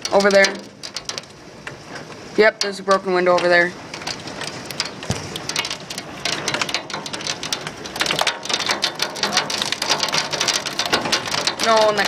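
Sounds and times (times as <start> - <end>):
hail clattering: 0.0 - 12.0
rain-like hiss: 0.0 - 12.0
heavy thud: 5.0 - 5.7.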